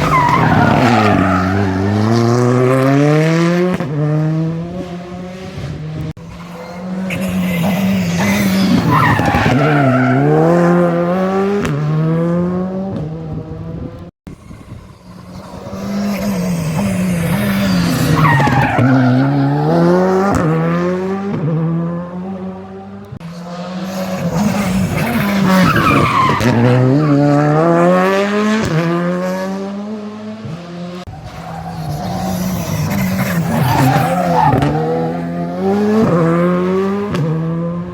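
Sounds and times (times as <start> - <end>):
rally cars passing at speed: 0.0 - 37.9.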